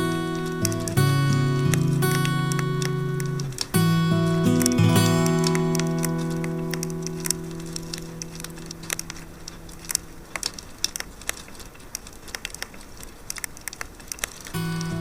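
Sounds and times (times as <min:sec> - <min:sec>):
acoustic guitar playing: 0:00.0 - 0:10.4, 0:14.6 - 0:15.0
campfire crackling and popping: 0:00.0 - 0:15.0.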